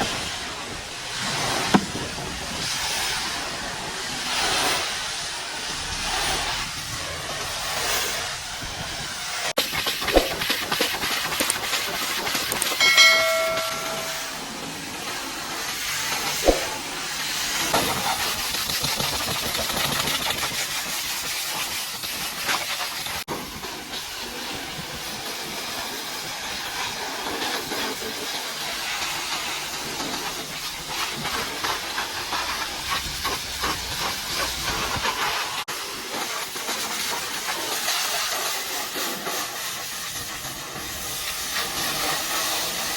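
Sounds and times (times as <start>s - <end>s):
pressure washer spraying: 16.4s - 42.9s.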